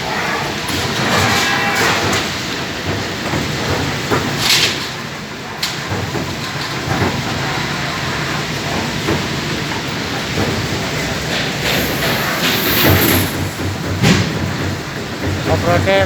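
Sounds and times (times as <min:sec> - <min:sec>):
short hiss: 0:11.3 - 0:14.0.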